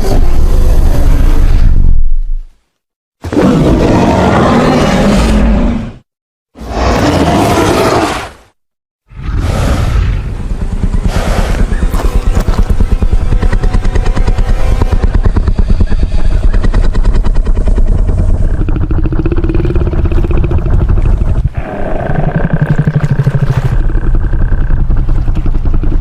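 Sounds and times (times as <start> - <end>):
deep rumbling dinosaur growl: 15.0 - 26.0.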